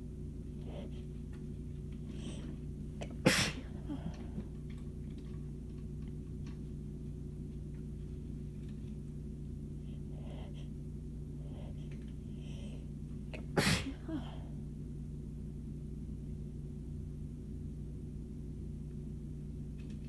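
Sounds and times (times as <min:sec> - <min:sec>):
steady low hum: 0:00.0 - 0:20.0
woman sneezing: 0:03.0 - 0:04.2, 0:13.4 - 0:14.4.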